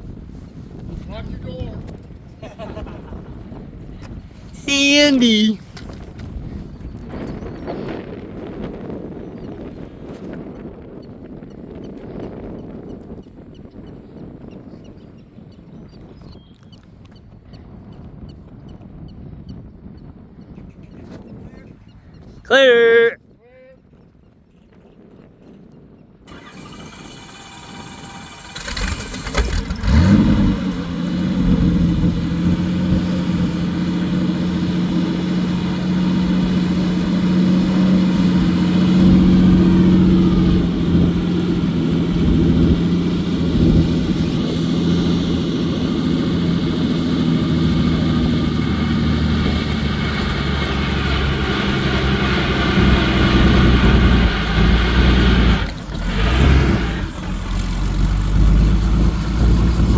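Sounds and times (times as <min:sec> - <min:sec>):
rotor whine rising: 0:47.7 - 0:59.9.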